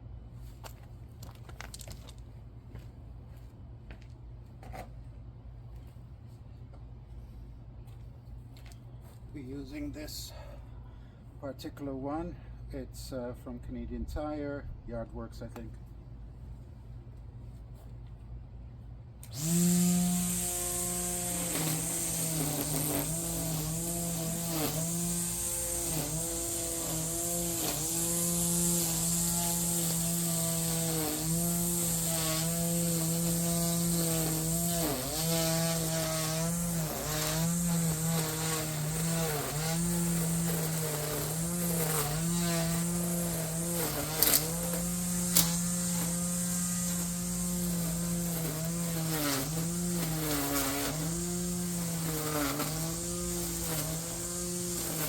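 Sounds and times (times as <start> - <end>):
lawn edger motor running: 19.2 - 55.0.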